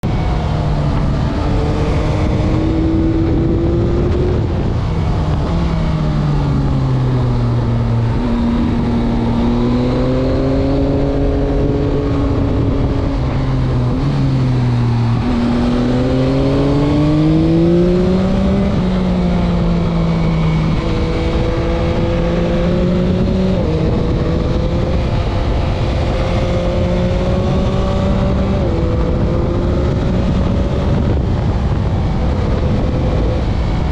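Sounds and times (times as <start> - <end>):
motorcycle engine revving: 0.0 - 33.9
wind rush: 0.0 - 33.9.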